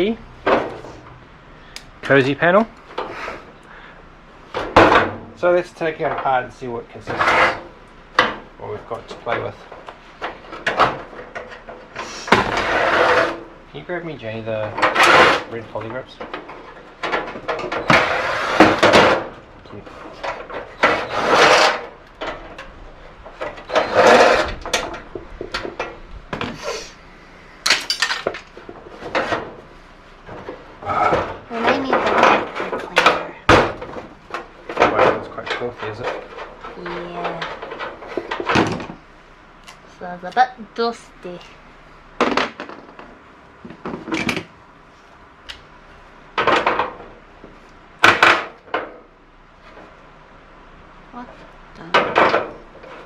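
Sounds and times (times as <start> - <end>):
sheet metal clattering and scraping: 0.0 - 1.0, 4.5 - 13.6, 14.3 - 26.5, 27.7 - 39.0
metal parts clanking: 14.6 - 26.0, 27.6 - 29.6, 30.4 - 38.9.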